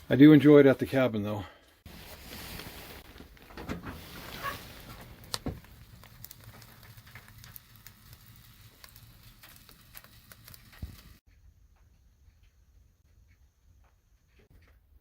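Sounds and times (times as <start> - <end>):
woodstove crackling and sizzling: 0.0 - 11.2.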